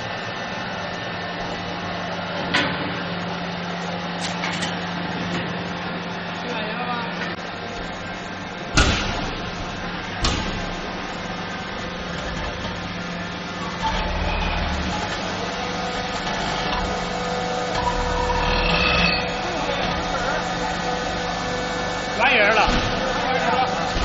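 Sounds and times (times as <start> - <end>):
factory machinery humming: 0.0 - 24.0.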